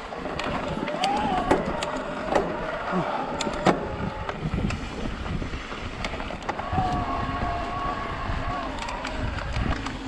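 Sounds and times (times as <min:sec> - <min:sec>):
bike knocking and rattling over rock: 0:00.0 - 0:07.6
wind rumble on microphone: 0:00.0 - 0:10.0.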